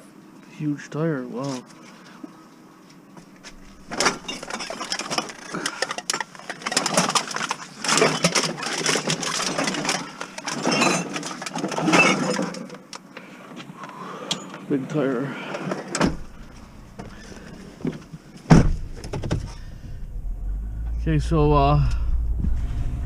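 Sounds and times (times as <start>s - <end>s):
rummaging knocks and scrapes: 3.2s - 12.9s, 15.6s - 19.8s.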